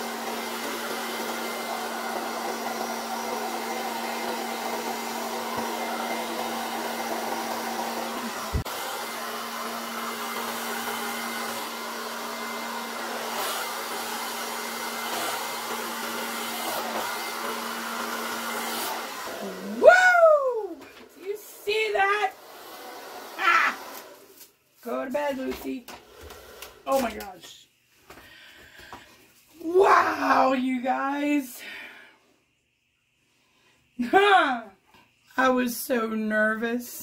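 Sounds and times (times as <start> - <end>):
hair dryer blowing: 0.0 - 27.2.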